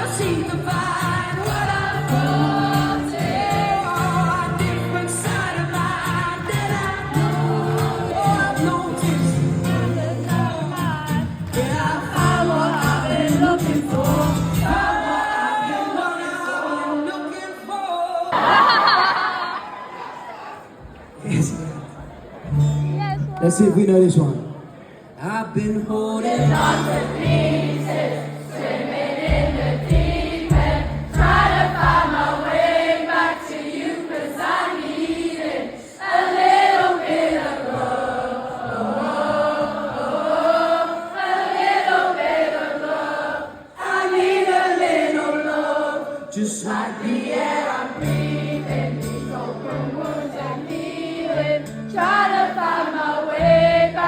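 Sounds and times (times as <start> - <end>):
acoustic guitar: 0.0 - 19.4, 20.8 - 23.6, 25.6 - 41.2, 42.3 - 54.0
crowd singing along: 0.0 - 23.2, 24.6 - 54.0
swell of voices: 14.6 - 23.5, 24.4 - 54.0
acoustic guitar strums: 26.4 - 33.0.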